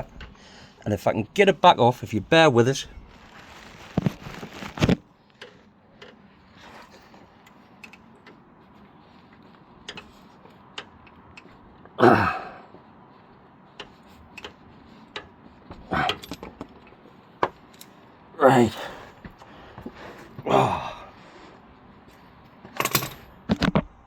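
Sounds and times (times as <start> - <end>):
handling rustle: 2.0 - 11.8.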